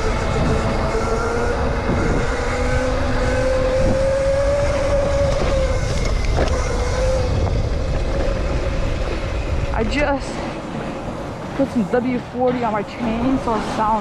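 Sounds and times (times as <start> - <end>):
electric dirt bike motor whine: 0.0 - 10.1.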